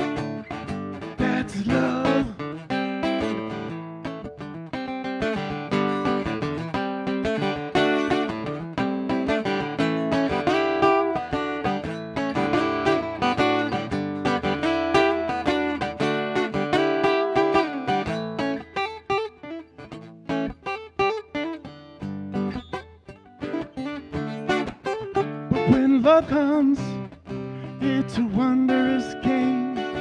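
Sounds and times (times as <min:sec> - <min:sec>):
acoustic stringed instrument strumming: 0:00.0 - 0:30.0.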